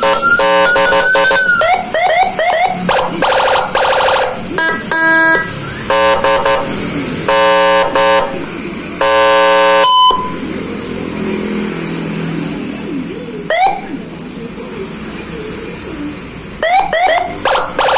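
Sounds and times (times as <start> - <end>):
siren horn blasts: 0.0 - 8.4, 9.0 - 10.4, 16.6 - 17.9
short high beep: 9.8 - 10.4.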